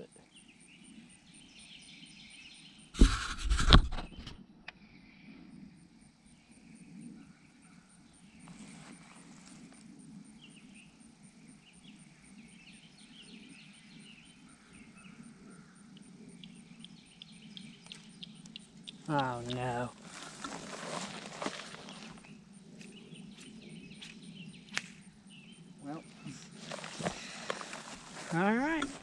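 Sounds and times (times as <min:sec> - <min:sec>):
birds chirping: 0:11.7 - 0:29.0.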